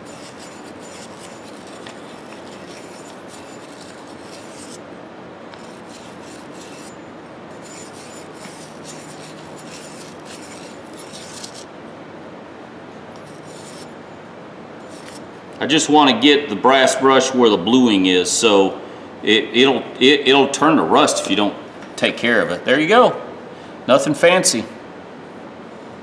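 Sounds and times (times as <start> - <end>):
wire brush scrubbing metal: 0.0 - 4.8, 5.6 - 11.7, 13.2 - 13.9, 14.8 - 15.2.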